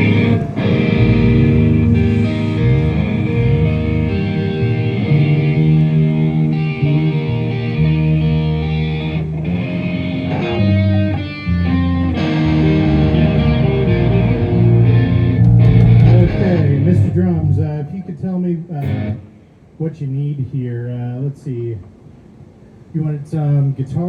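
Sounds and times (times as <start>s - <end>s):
steady bass line: 0.0s - 9.5s, 12.6s - 17.7s
electric guitar lead: 0.0s - 17.9s, 18.8s - 19.3s
live band playing instrumental: 15.4s - 16.8s.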